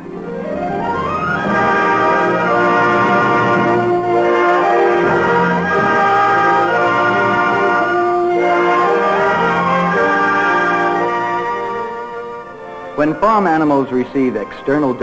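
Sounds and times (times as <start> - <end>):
orchestral music with brass: 0.0 - 15.0.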